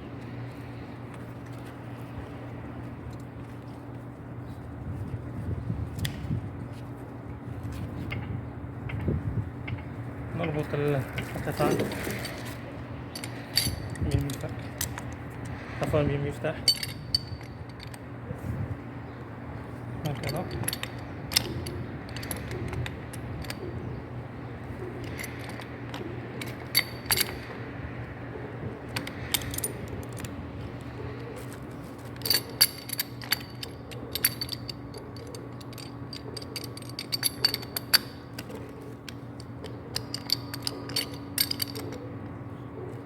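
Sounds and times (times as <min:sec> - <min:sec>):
steady low hum: 0:00.0 - 0:43.0
metallic clinks of wrench and pipe fittings: 0:13.1 - 0:15.0, 0:16.6 - 0:18.0, 0:20.0 - 0:23.6, 0:25.0 - 0:27.6, 0:28.9 - 0:30.3, 0:32.2 - 0:42.0.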